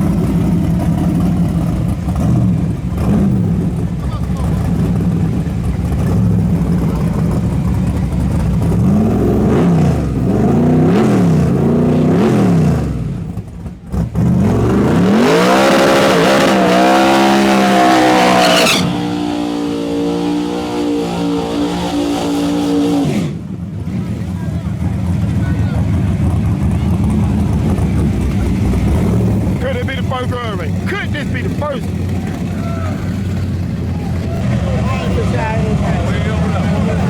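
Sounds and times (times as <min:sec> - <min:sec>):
drag car engine revving: 0:00.0 - 0:37.0.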